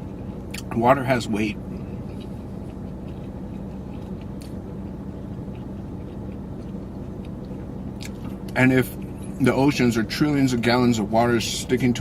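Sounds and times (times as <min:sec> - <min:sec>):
low background hum: 0:00.0 - 0:12.0
person chewing food: 0:01.7 - 0:09.4.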